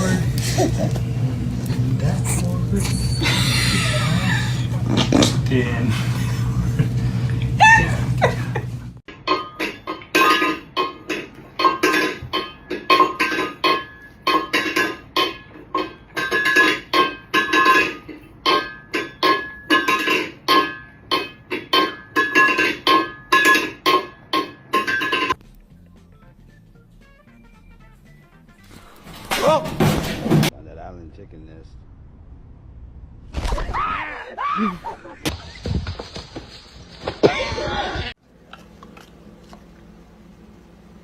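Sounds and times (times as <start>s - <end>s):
low hum: 31.0s - 33.6s.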